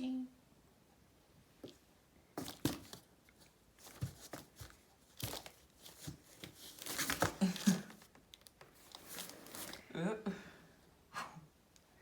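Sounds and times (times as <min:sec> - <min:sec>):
cardboard box scuffing and rustling: 0:03.8 - 0:07.4.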